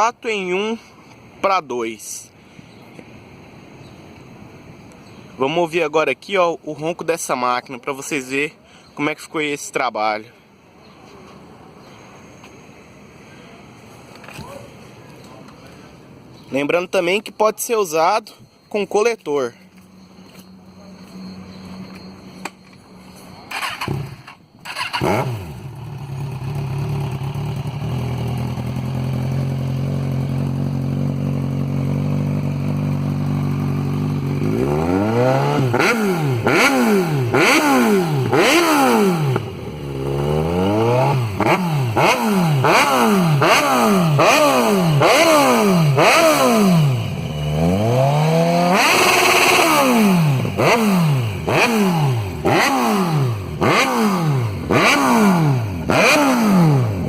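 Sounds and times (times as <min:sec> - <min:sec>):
motorcycle engine idling and revving: 0:18.5 - 0:57.0.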